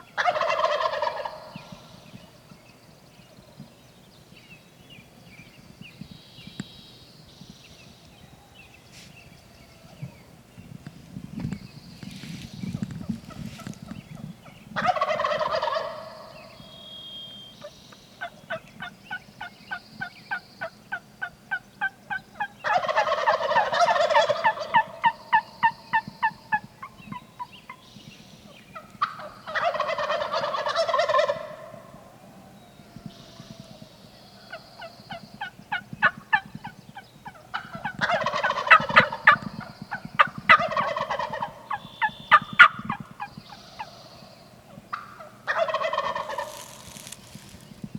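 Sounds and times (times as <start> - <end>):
turkey yelps and clucks: 0.2 - 1.6, 14.8 - 16.3, 21.5 - 26.6, 28.8 - 31.8, 37.2 - 43.9, 44.9 - 47.2
turkey gobbling: 0.2 - 1.7, 14.8 - 16.4, 21.2 - 26.6, 28.8 - 31.8, 35.4 - 43.0, 44.9 - 47.6.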